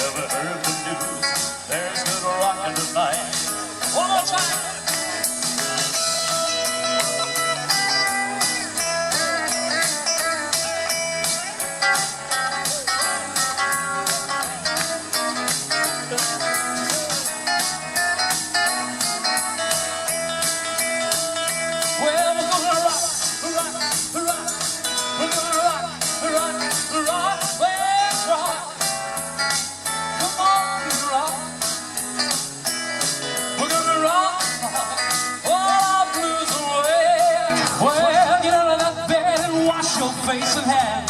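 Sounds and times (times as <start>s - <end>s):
drum beat: 0.0s - 30.6s
lead guitar bending notes: 0.0s - 41.0s.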